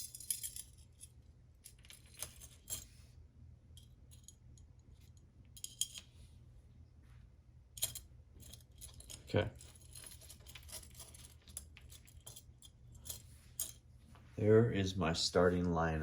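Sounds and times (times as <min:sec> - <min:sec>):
metal fishing tackle clinking: 0:00.0 - 0:01.1, 0:05.6 - 0:06.1, 0:07.8 - 0:13.8
low steady hum: 0:00.0 - 0:16.0.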